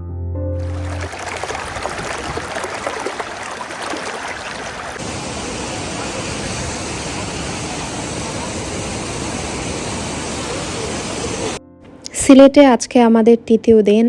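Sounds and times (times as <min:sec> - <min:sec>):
water rushing loudly: 0:00.6 - 0:11.6.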